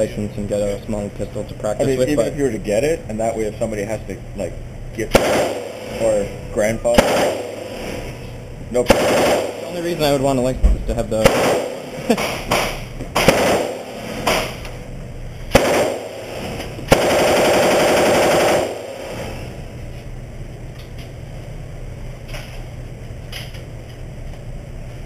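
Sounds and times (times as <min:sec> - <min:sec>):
single gunshots: 0:05.1 - 0:06.3, 0:06.9 - 0:08.2, 0:08.8 - 0:14.7, 0:15.5 - 0:19.5
machine gun automatic burst: 0:05.2 - 0:06.2, 0:07.0 - 0:08.1, 0:08.8 - 0:10.2, 0:11.2 - 0:14.6, 0:15.5 - 0:19.5.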